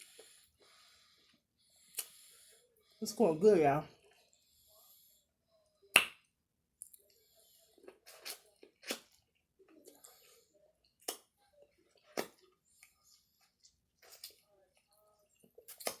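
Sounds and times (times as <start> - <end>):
quiet chewing: 0.0 - 3.0, 3.9 - 5.9, 6.8 - 16.0
wet mouth smacks: 15.7 - 16.0.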